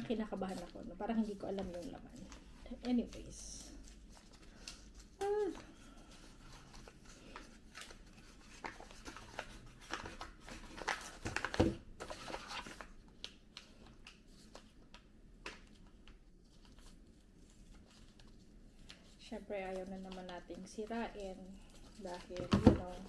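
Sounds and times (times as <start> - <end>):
paper wrapping rustling: 0.0 - 23.0.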